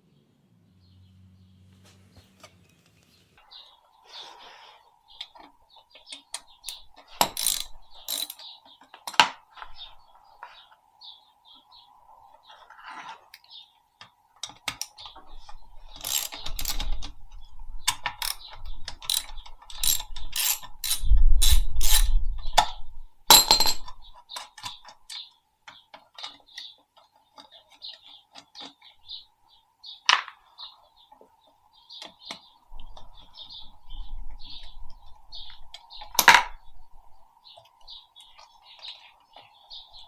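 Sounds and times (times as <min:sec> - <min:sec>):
ratchet wrench clicking: 0:06.7 - 0:08.4, 0:16.0 - 0:16.8, 0:18.2 - 0:18.4, 0:19.1 - 0:22.1
metal clinking: 0:23.3 - 0:23.9.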